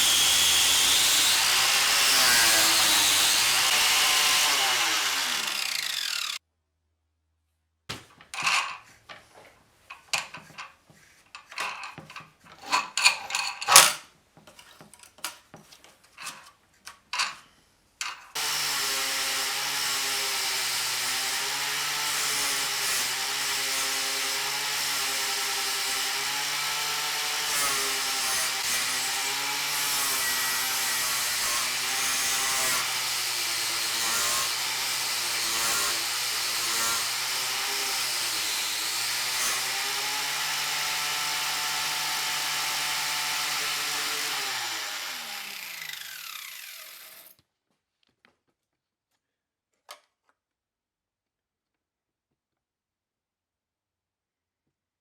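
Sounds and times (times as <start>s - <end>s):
angle grinder running: 0.0s - 6.4s, 18.4s - 47.4s
angle grinder winding down: 0.0s - 6.4s, 18.4s - 47.4s.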